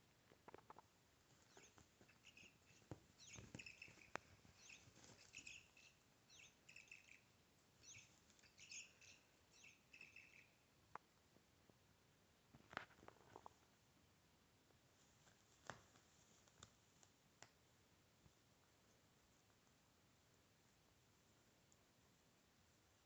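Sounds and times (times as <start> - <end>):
electronic bird-like chirps: 3.2 - 7.2, 7.8 - 10.5.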